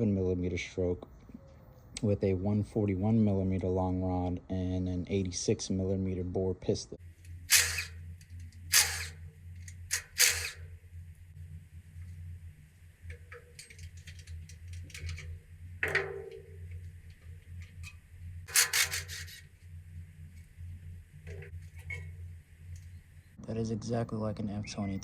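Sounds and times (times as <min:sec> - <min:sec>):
steady low hum: 0:00.0 - 0:25.0
metal parts clanking: 0:07.2 - 0:10.8, 0:13.0 - 0:20.5.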